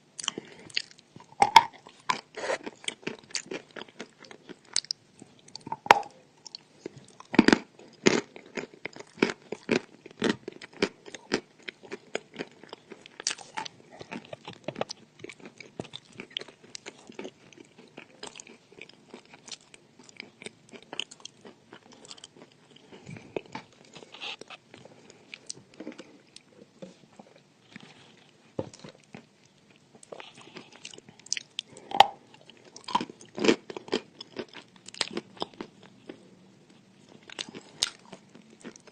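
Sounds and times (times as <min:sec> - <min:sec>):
chalk being chewed crunchily: 0:29.1 - 0:38.9.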